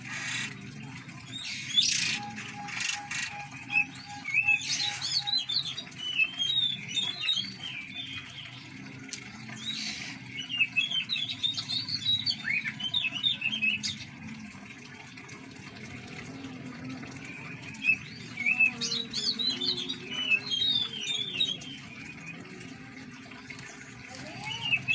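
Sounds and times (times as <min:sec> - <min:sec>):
birds chirping and singing: 0:00.0 - 0:14.3, 0:15.9 - 0:24.9.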